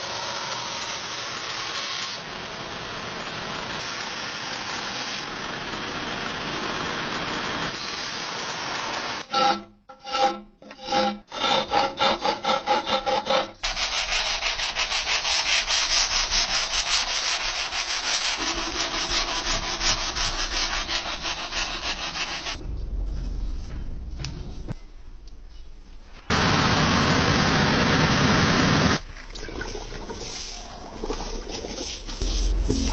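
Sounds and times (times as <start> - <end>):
abrasive rubbing on steel blade: 9.3 - 22.6.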